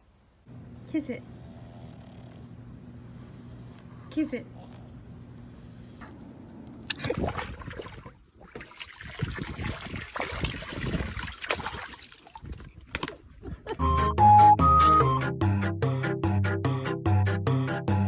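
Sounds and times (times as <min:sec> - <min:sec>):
water splashing and trickling: 0:06.9 - 0:13.2.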